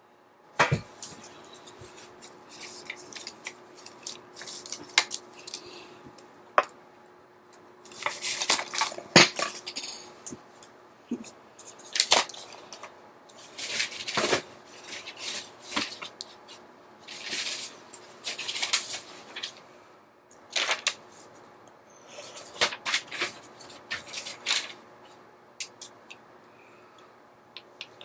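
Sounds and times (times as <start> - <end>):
paper rustling and brushing: 0.9 - 5.1, 13.4 - 19.6, 22.2 - 24.8.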